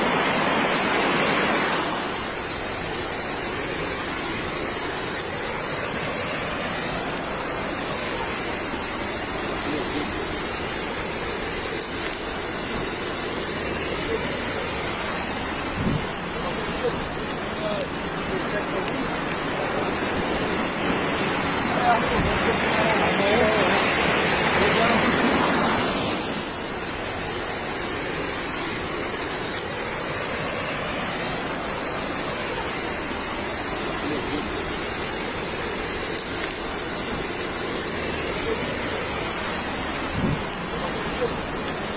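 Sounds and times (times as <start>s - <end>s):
heavy rain: 0.0s - 41.9s
storm water rushing: 0.0s - 41.9s
storm wind: 14.7s - 17.3s, 19.6s - 27.5s, 39.1s - 40.9s.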